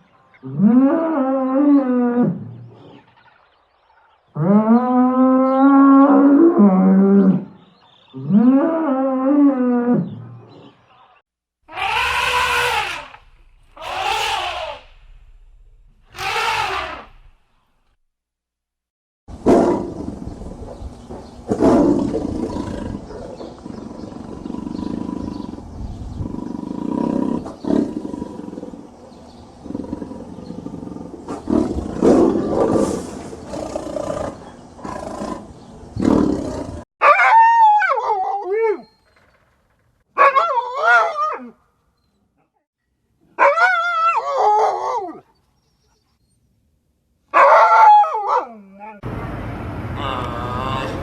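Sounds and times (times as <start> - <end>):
big cat roaring and growling: 11.7 - 17.4, 21.5 - 29.0, 29.6 - 36.8.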